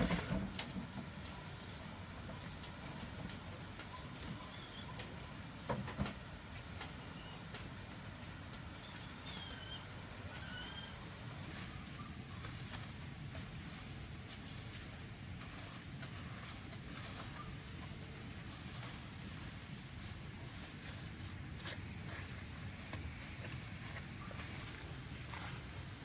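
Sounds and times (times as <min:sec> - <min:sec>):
low background hum: 0:00.0 - 0:26.0
faint bird chirps: 0:03.8 - 0:05.6, 0:06.9 - 0:07.6, 0:08.2 - 0:12.9.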